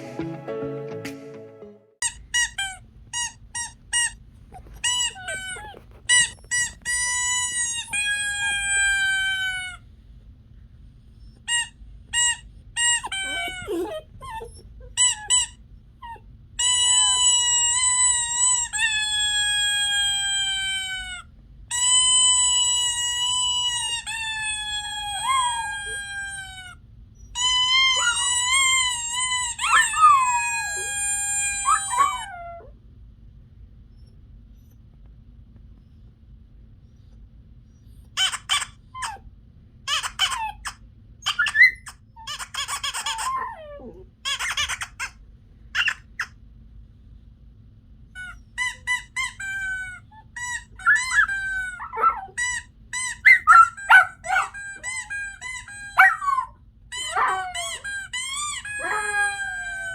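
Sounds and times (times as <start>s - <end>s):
faint low hum: 0.0s - 59.9s
dog yipping: 2.0s - 9.8s, 11.2s - 32.7s, 37.7s - 39.2s, 39.9s - 46.4s, 48.1s - 59.9s
dog howling: 13.1s - 14.6s, 23.0s - 26.7s, 27.7s - 32.8s, 43.0s - 44.1s, 49.6s - 59.9s.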